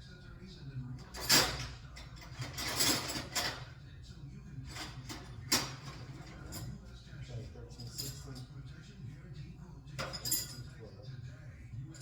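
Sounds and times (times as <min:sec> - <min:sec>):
metal tools rattling: 0:01.0 - 0:03.7, 0:10.0 - 0:10.8.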